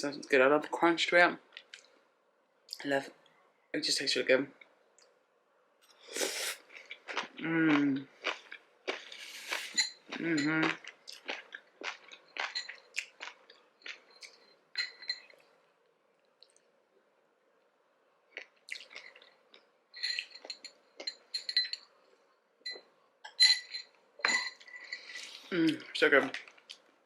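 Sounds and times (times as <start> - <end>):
chewing and crunching food: 6.3 - 14.6, 18.3 - 21.4
fork clinking on container: 14.8 - 15.4, 20.0 - 21.9, 22.7 - 25.3.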